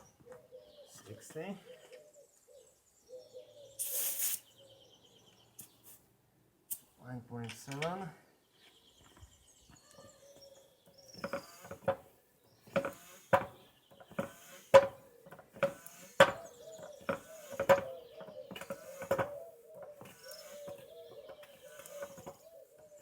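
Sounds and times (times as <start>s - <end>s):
foot pump knocking and hissing: 11.2s - 22.5s.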